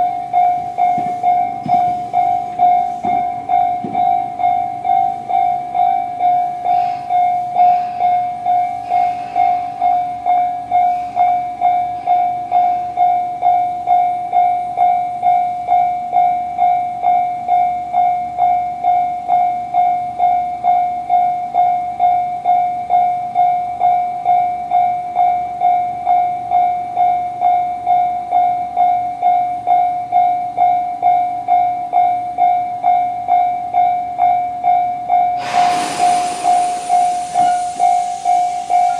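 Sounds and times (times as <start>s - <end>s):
train running noise: 0.0s - 13.8s, 35.2s - 38.9s
level-crossing warning bell dinging: 0.0s - 38.9s.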